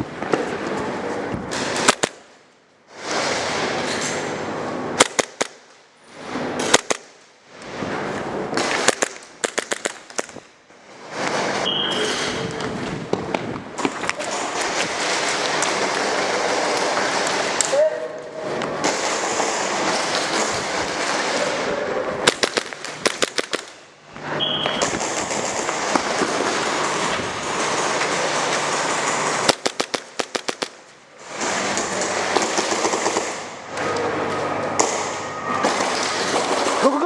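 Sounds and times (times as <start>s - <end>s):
steady background noise: 0.0s - 37.0s
airsoft pistols firing: 1.5s - 2.2s, 5.0s - 5.7s, 6.6s - 7.2s, 8.6s - 10.5s, 22.2s - 23.8s, 28.9s - 30.8s, 32.3s - 33.5s.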